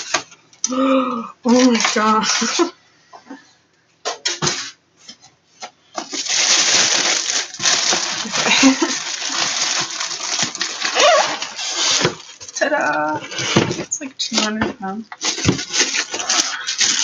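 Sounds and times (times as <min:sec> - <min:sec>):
styrofoam and plastic wrap rustling: 0:00.0 - 0:00.4, 0:01.5 - 0:02.8, 0:05.6 - 0:17.0.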